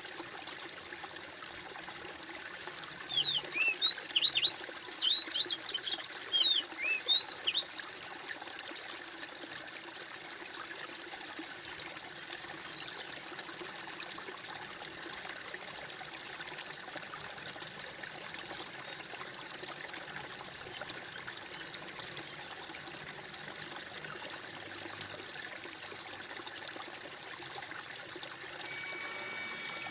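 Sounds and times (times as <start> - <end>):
water trickling and gurgling: 0.0 - 29.9
bird chirping rapidly: 3.1 - 7.6.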